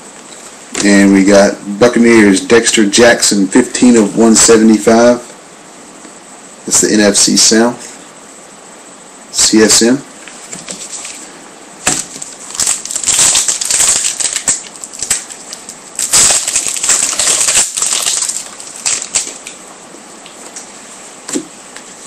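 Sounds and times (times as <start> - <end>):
foil wrapper crinkling and tearing: 11.9 - 19.6.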